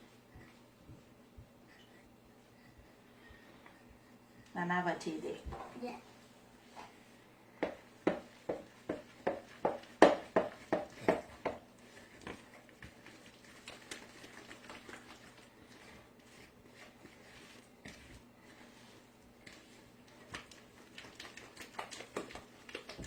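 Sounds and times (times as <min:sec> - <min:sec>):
spatula knocking mixing bowl: 0:07.6 - 0:13.0.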